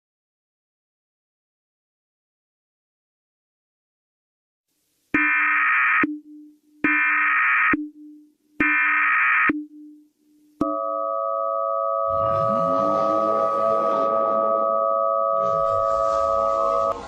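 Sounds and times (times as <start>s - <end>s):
two-tone attention signal: 10.6s - 17.0s.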